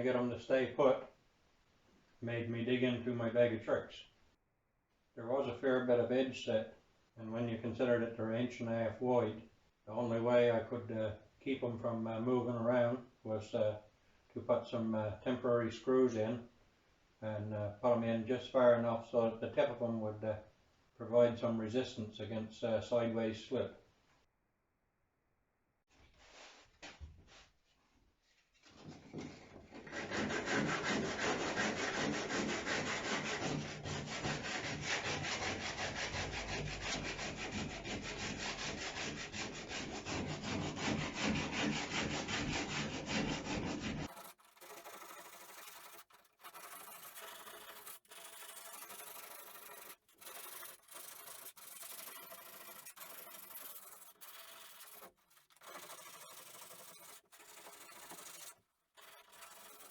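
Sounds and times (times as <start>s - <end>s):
hand sanding strokes: 26.2s - 26.7s, 29.7s - 59.9s.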